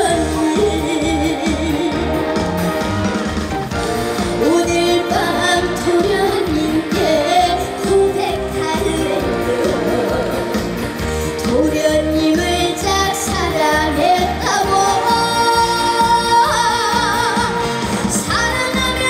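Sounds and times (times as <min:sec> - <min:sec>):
woman singing: 0:00.0 - 0:02.8, 0:04.3 - 0:19.0
instrumental accompaniment with beat: 0:00.0 - 0:19.0.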